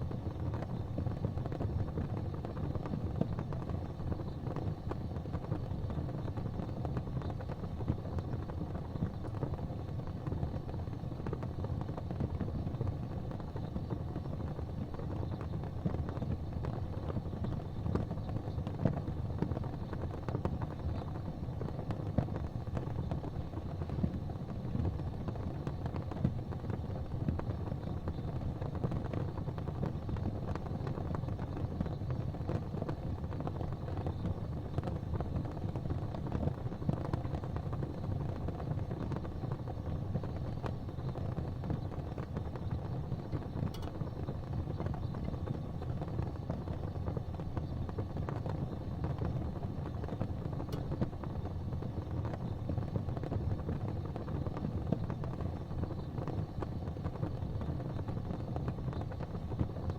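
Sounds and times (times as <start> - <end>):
gas fireplace flames rumbling: 0.0 - 59.9
faint ticks: 43.3 - 46.3.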